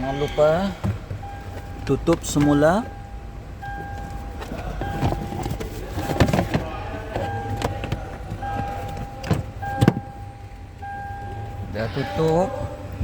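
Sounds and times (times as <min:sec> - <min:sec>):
electronic car chime: 0:01.2 - 0:05.4, 0:07.2 - 0:12.1.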